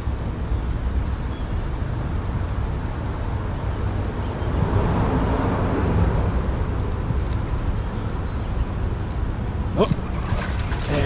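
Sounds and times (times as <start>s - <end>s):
wind buffeting microphone: 0.0s - 11.0s
river flowing: 9.2s - 11.0s.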